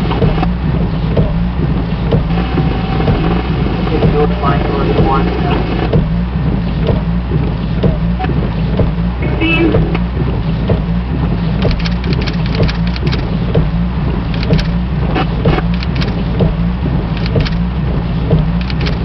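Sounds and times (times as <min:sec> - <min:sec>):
vehicle engine and road drone: 0:00.0 - 0:19.0
small rattles and clicks: 0:10.0 - 0:17.7, 0:18.3 - 0:19.0.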